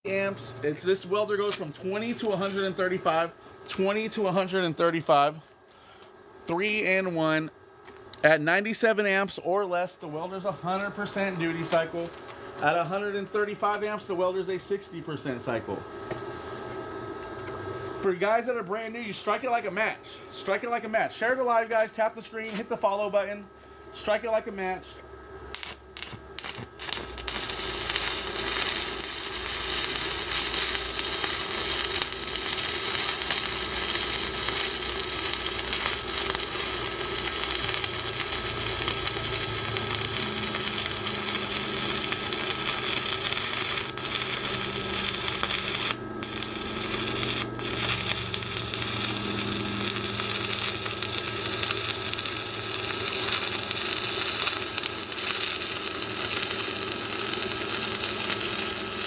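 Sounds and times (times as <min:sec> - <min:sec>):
welding arc crackling: 0:00.1 - 0:04.9, 0:25.4 - 0:59.0.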